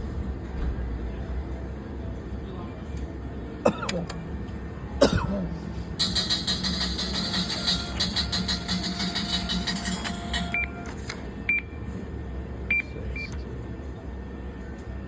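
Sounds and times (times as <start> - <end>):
casino hum: 1.0 - 11.3
slot machine clicking: 6.0 - 11.1.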